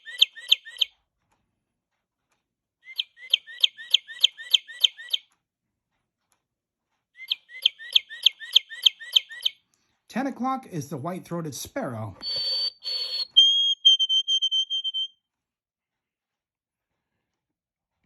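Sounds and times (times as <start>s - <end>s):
recorded bird song whistles: 0.0s - 0.9s, 2.8s - 5.3s, 7.2s - 9.6s, 12.2s - 15.2s.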